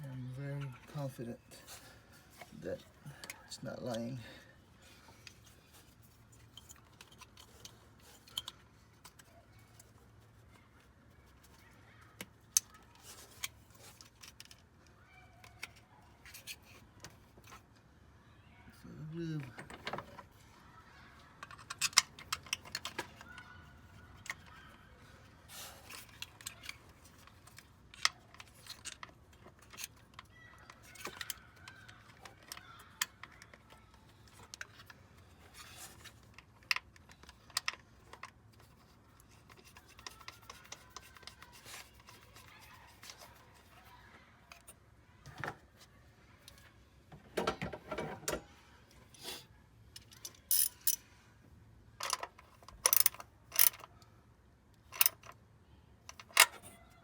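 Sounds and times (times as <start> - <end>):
tools and engine parts rattling: 49.9 - 51.0, 52.0 - 53.9, 54.8 - 55.4.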